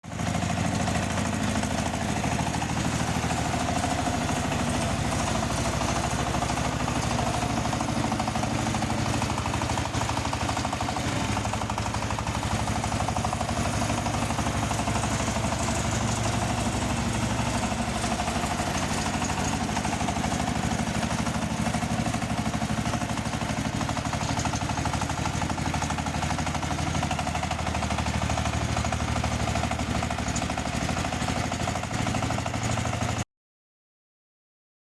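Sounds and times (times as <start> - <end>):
tiller engine running: 0.0 - 33.2.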